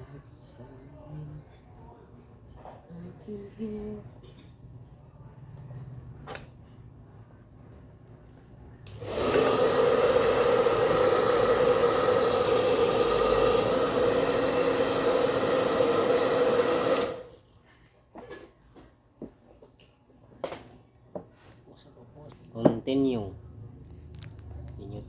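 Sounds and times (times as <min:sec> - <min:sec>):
blender motor humming: 0:08.9 - 0:17.3.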